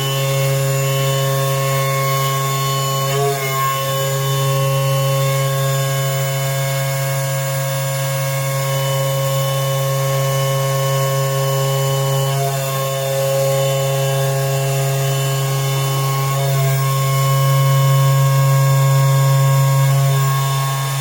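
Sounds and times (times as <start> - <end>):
milling spindle whining: 14.8 - 21.0.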